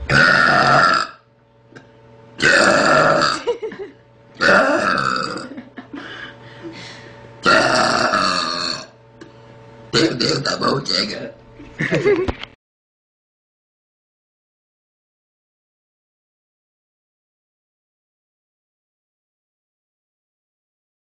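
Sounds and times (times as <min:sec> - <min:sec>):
girl burping: 0:00.1 - 0:01.2, 0:02.4 - 0:03.5, 0:04.4 - 0:05.6, 0:07.4 - 0:08.9, 0:10.0 - 0:10.5.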